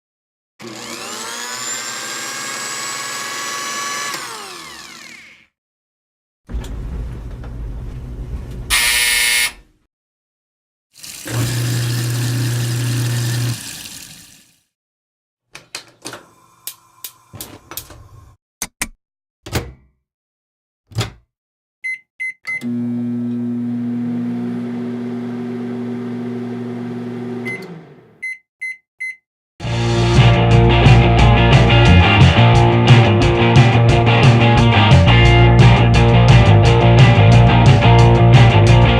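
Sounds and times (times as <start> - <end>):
microwave beeps: 21.8 - 22.8, 27.4 - 29.2
microwave oven humming: 22.6 - 27.8.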